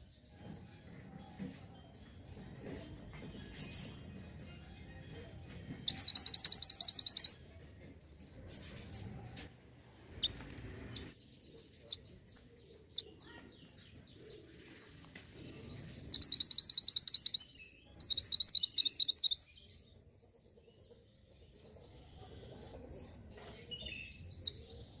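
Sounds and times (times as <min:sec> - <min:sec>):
soft bird chips and notes: 0:01.3 - 0:09.4, 0:10.0 - 0:19.8
high trilled bird song: 0:03.1 - 0:07.6, 0:08.2 - 0:09.3, 0:15.4 - 0:20.0.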